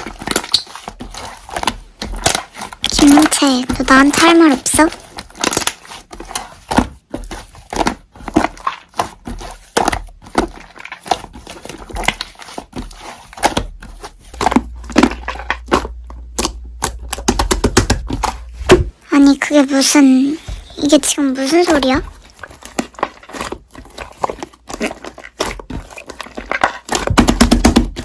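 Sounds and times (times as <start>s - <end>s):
slime being squished: 0.0s - 28.0s.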